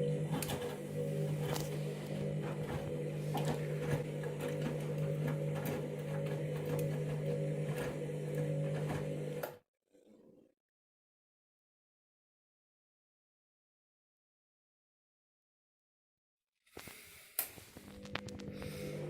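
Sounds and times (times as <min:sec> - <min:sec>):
washing machine motor humming: 0:00.0 - 0:09.6, 0:17.8 - 0:19.0.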